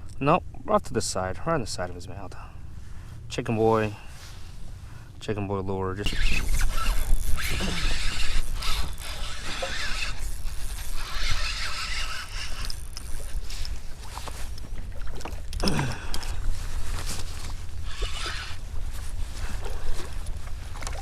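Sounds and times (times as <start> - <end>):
wind rumbling on microphone: 6.0 - 21.0
gear clicking and rattling: 6.1 - 21.0.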